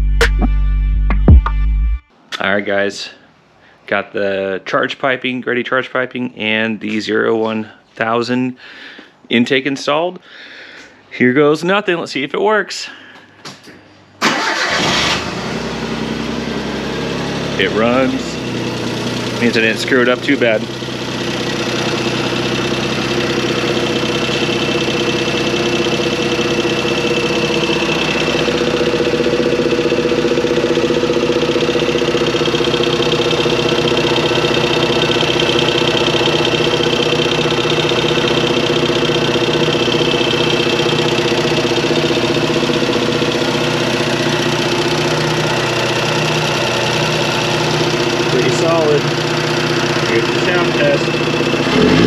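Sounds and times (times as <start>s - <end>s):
car engine idling: 14.2s - 52.0s.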